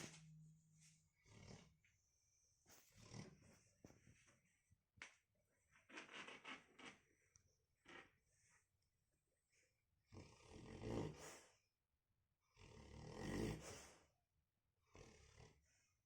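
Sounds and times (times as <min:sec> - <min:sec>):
dog snoring: 0:01.2 - 0:01.7, 0:02.9 - 0:03.6, 0:10.1 - 0:11.5, 0:12.5 - 0:14.0, 0:14.9 - 0:15.7.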